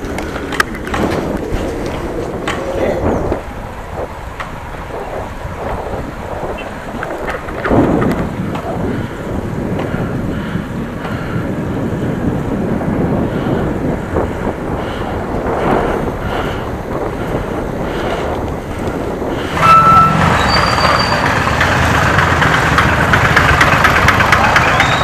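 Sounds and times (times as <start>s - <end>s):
traffic noise: 0.0s - 25.0s
wind and road rumble: 0.0s - 25.0s
brief high tone: 19.6s - 21.2s.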